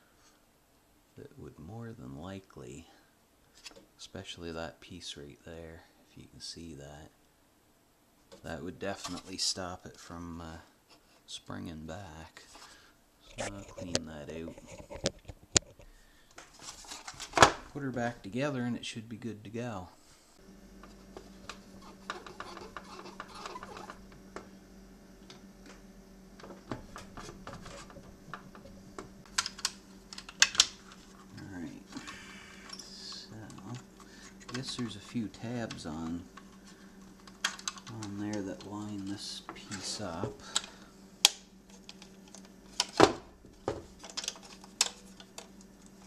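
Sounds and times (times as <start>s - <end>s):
plastic parts clicking and tapping: 26.4s - 31.0s, 35.6s - 38.7s, 43.7s - 45.6s.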